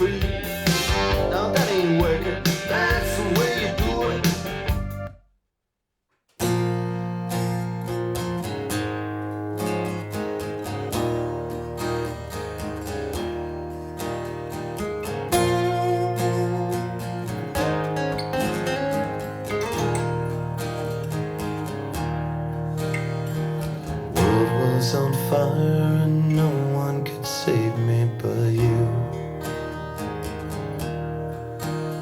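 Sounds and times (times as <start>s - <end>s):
slow guitar-led song: 0.0s - 5.1s, 6.4s - 32.0s
steady bass line: 0.0s - 5.2s.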